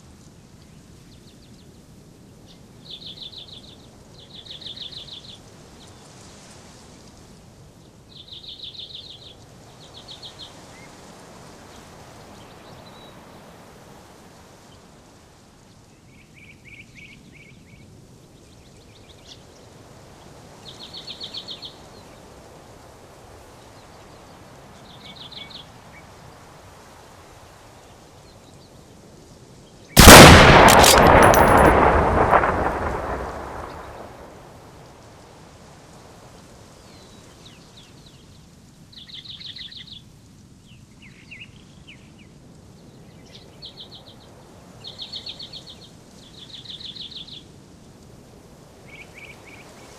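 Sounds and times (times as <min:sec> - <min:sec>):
loud bang: 0:30.0 - 0:34.4.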